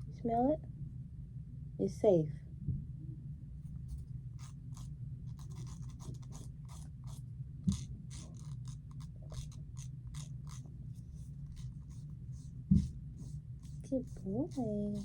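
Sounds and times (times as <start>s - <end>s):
nail file rasping on toenails: 4.4s - 12.6s, 13.2s - 15.0s
low thump: 12.6s - 13.0s.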